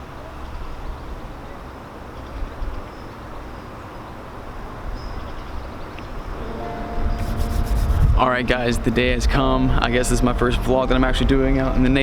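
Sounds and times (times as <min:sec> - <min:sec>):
steady hiss: 0:06.4 - 0:08.2
low rumble: 0:06.4 - 0:12.0.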